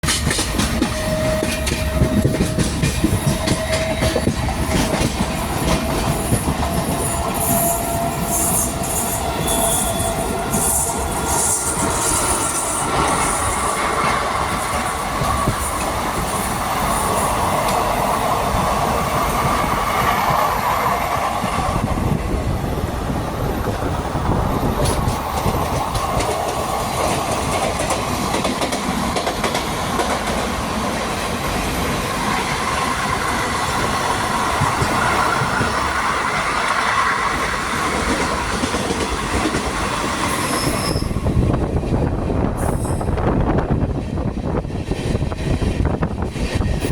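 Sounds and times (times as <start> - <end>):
train running on rails: 0.0 - 46.9
ringing rail tone: 0.6 - 20.0, 40.2 - 41.3.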